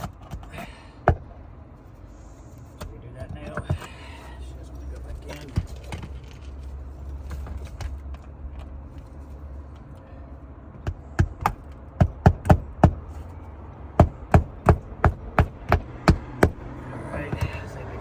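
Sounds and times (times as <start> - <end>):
hammer driving nails: 10.8 - 13.0, 14.0 - 16.6.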